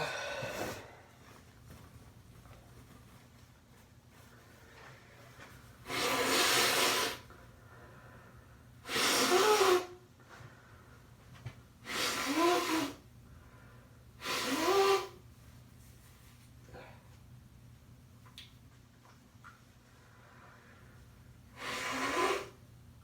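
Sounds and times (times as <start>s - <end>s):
person blowing nose: 5.8s - 7.3s, 8.8s - 10.0s, 11.8s - 13.0s, 14.2s - 15.2s, 21.5s - 22.6s.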